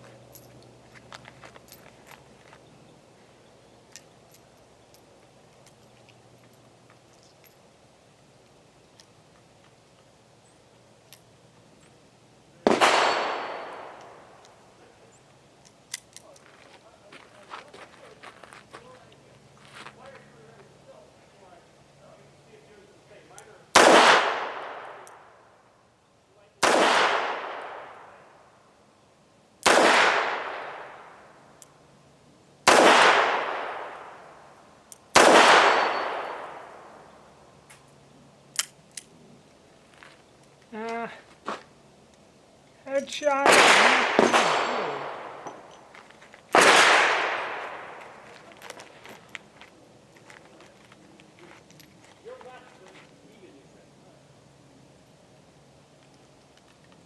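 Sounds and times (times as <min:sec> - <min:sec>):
revolver gunshot echoing: 0:12.6 - 0:14.2, 0:23.8 - 0:25.3, 0:26.6 - 0:28.1, 0:29.6 - 0:31.1, 0:32.7 - 0:34.2, 0:35.2 - 0:36.9, 0:43.4 - 0:45.7, 0:46.6 - 0:48.0
revolver shots with echo: 0:12.7 - 0:14.0, 0:43.4 - 0:45.5.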